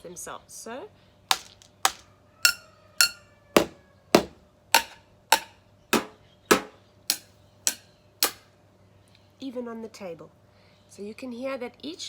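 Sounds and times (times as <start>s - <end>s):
chopsticks tapping on containers: 1.3s - 8.4s.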